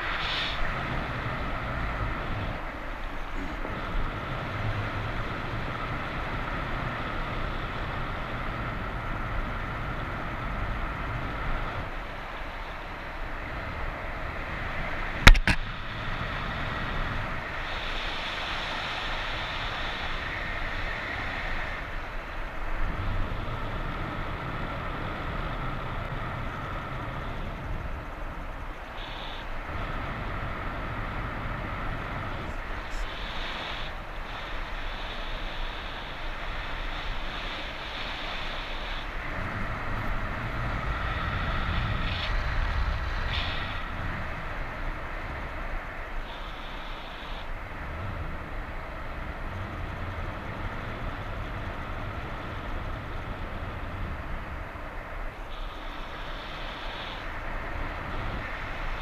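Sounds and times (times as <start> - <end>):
wind buffeting microphone: 0.0 - 59.0
sharp click: 15.3 - 15.6.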